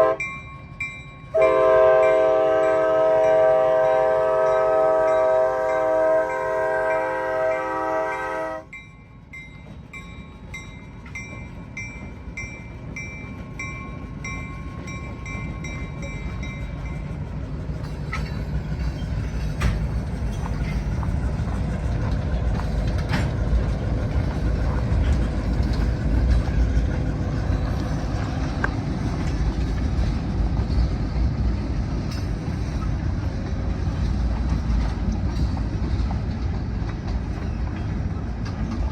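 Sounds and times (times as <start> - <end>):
locomotive air horn chord: 0.0 - 0.3, 1.4 - 8.7
diesel locomotive rumble: 0.0 - 38.9
train wheels clicking over rails: 9.2 - 38.9.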